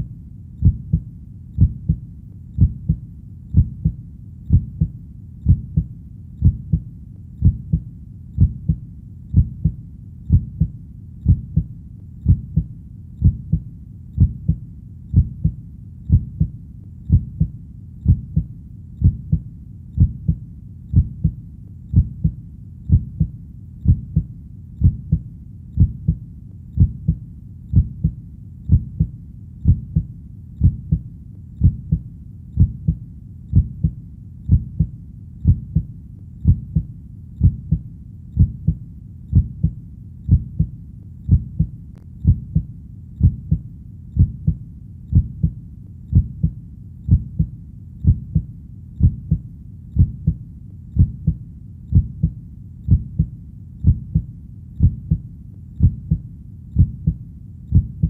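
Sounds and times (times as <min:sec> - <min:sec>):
faint low rumble: 0:00.0 - 0:58.0
heartbeat thumping: 0:00.6 - 0:02.0, 0:02.6 - 0:58.0.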